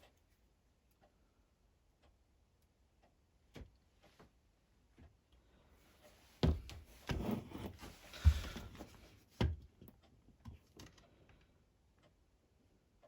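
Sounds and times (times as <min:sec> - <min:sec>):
rubbing and scraping: 0:06.9 - 0:09.0.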